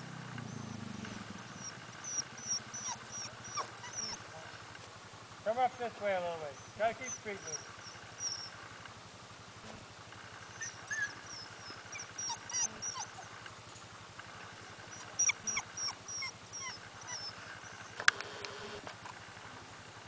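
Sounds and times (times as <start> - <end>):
puppy yelping: 0.4 - 0.9, 1.5 - 4.4, 6.5 - 8.6, 10.5 - 13.4, 14.9 - 18.1.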